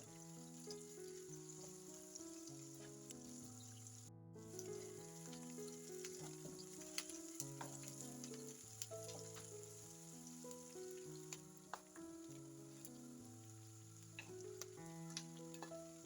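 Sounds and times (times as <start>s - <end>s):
food sizzling in a pan: 0.0s - 16.0s
soft instrumental music: 0.0s - 16.0s
stirring clicks: 4.5s - 9.6s, 14.0s - 16.0s.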